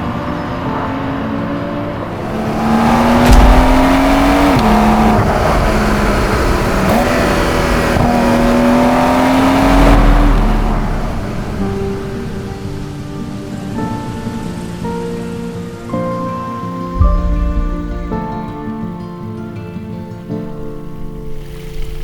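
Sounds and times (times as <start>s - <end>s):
car engine accelerating hard: 0.9s - 13.0s, 16.9s - 18.7s.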